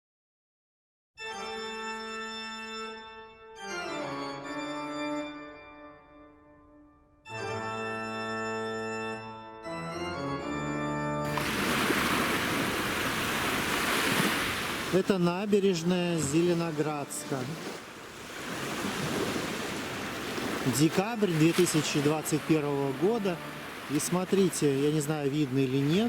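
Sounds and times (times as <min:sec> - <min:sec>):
slow music of sustained chords: 0:01.3 - 0:11.7, 0:22.0 - 0:24.1
wind: 0:11.2 - 0:26.0
sea surf: 0:11.3 - 0:26.0.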